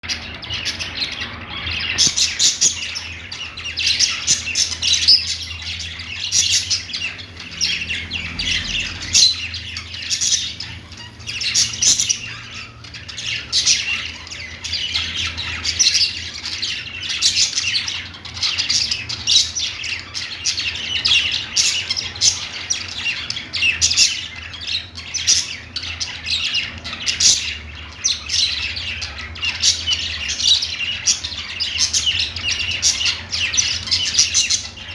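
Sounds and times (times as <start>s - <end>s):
budgerigars chattering and warbling: 0.0s - 34.9s.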